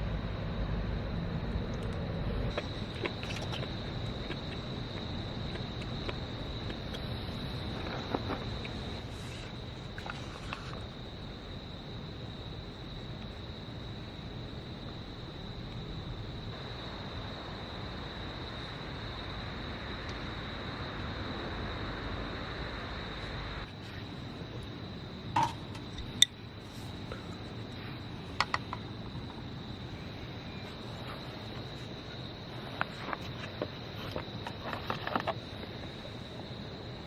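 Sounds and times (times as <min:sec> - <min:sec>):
cricket trilling: 0:00.0 - 0:37.0.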